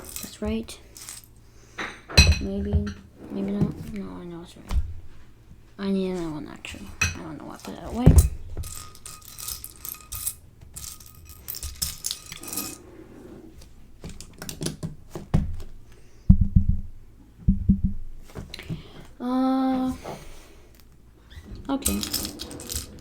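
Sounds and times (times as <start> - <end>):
plastic pieces clicking and knocking: 0.0 - 0.4, 7.7 - 12.8, 21.8 - 23.0
plastic pieces clattering: 0.0 - 1.3, 7.6 - 12.8, 21.8 - 23.0.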